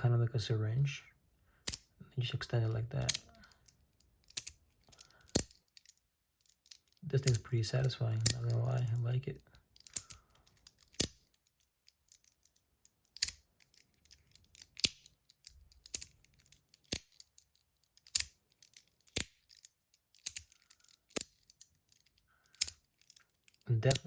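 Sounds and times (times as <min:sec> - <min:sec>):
metal slider fidget clicking: 0:22.5 - 0:24.0.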